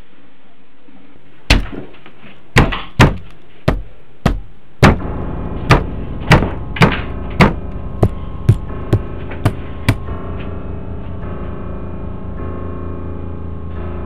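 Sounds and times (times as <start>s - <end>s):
heavy knocking on a door: 2.6s - 10.1s
eerie background music: 4.9s - 14.0s.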